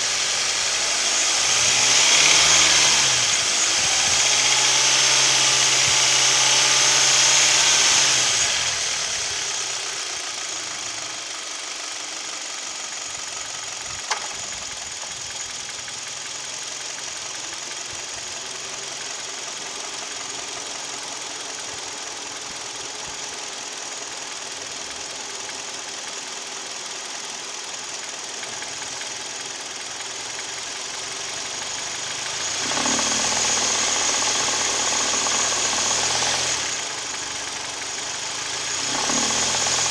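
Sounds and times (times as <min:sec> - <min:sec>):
car engine idling with knock: 0:08.1 - 0:39.9.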